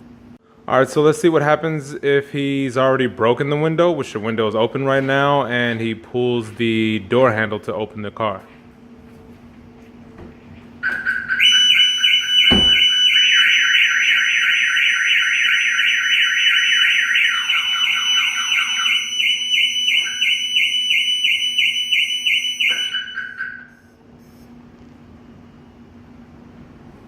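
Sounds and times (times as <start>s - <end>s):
car alarm sirens: 10.8s - 24.0s
thump: 12.5s - 12.9s.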